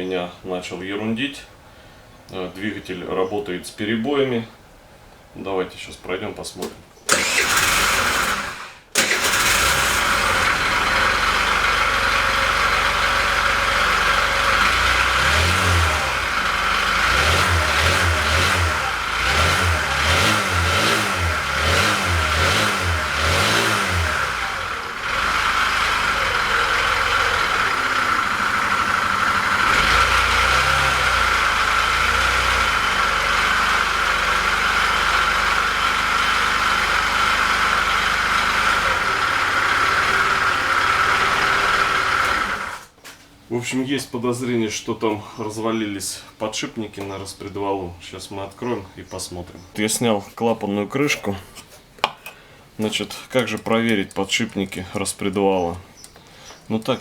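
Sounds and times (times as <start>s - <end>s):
scooter engine revving: 7.1s - 42.9s
engine idling with misfires: 7.1s - 43.0s
scooter engine starting: 7.1s - 43.0s.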